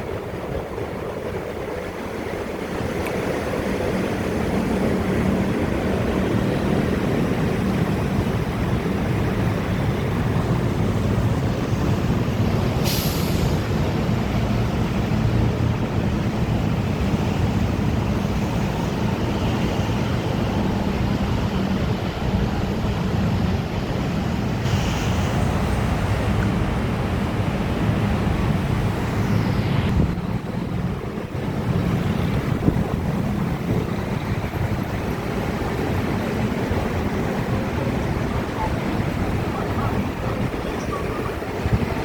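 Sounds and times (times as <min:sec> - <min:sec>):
train rumbling: 0:00.0 - 0:42.0
short hisses: 0:12.8 - 0:13.6.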